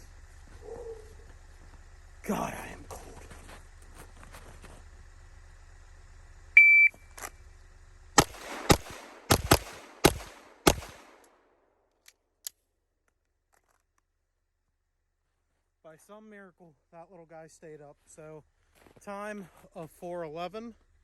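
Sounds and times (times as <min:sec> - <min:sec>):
shot timer beep: 0:06.6 - 0:07.1
pistol shots: 0:08.2 - 0:11.5.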